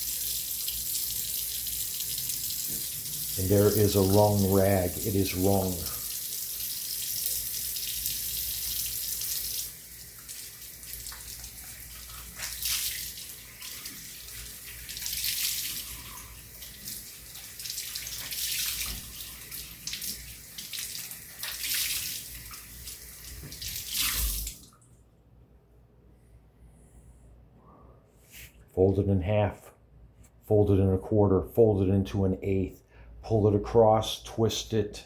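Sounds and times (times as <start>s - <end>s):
rag rinsed under water: 0.0s - 24.7s
tap water running and splashing: 0.0s - 24.8s.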